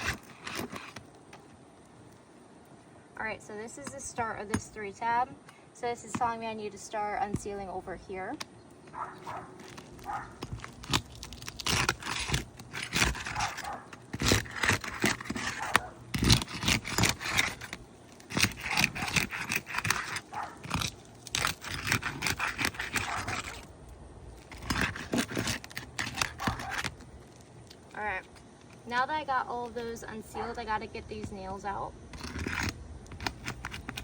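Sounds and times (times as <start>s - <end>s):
roofing tool scraping shingles: 0.0s - 1.6s, 9.2s - 30.6s, 32.1s - 34.0s.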